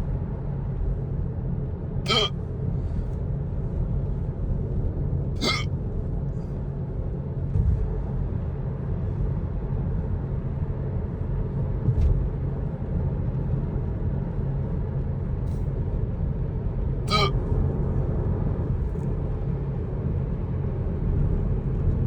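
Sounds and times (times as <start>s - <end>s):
man hiccuping: 2.1s - 2.3s, 5.4s - 5.7s, 17.1s - 17.4s.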